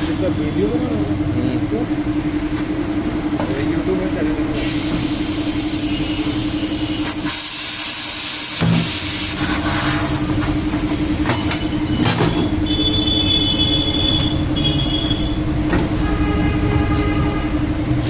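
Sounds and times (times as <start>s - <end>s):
air compressor humming: 0.0s - 18.0s
compressed air hissing: 4.5s - 11.3s.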